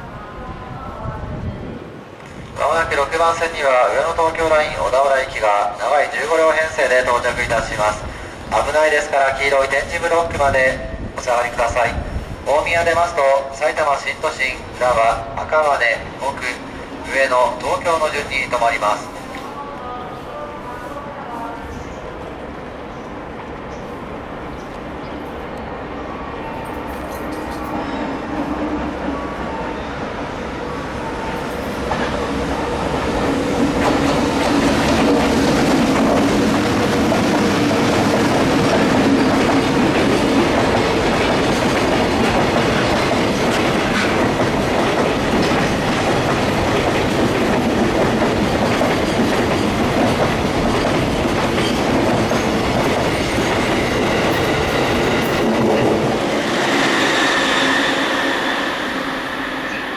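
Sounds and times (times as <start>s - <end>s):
high squeal of train wheels: 22.9s - 33.0s, 39.1s - 39.8s, 56.3s - 59.9s
train wheels clattering over rails: 31.3s - 59.9s.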